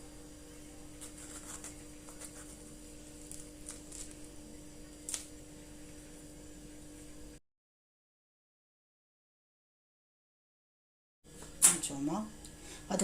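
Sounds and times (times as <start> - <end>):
faint steady hum: 0.0 - 7.4, 11.3 - 13.0.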